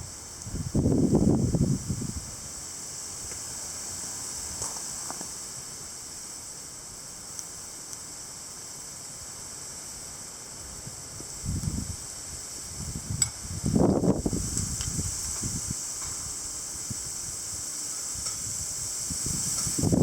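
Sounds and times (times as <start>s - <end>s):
wind gust buffeting microphone: 0.0s - 2.5s, 11.4s - 12.0s, 12.7s - 17.4s, 18.2s - 20.0s
strong wind through trees: 0.0s - 20.0s.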